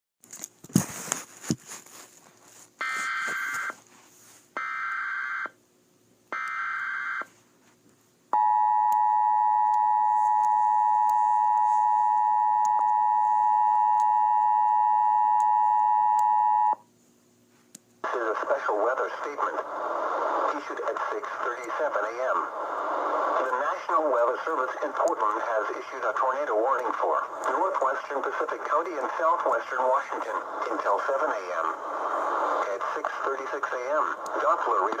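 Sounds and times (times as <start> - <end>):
sharp clicks and crackle: 24.6 - 25.4, 26.8 - 35.0.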